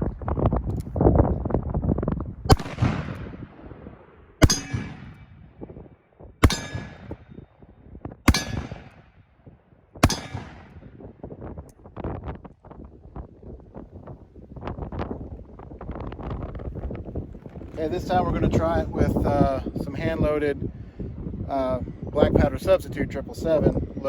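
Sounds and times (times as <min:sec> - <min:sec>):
revolver shots ringing: 0:04.4 - 0:05.4, 0:06.4 - 0:07.4, 0:08.3 - 0:09.0, 0:10.0 - 0:11.0.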